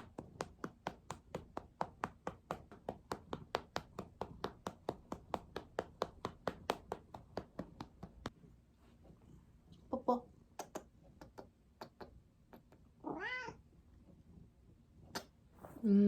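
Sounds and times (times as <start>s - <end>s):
hand patting a cat: 0.0s - 8.4s.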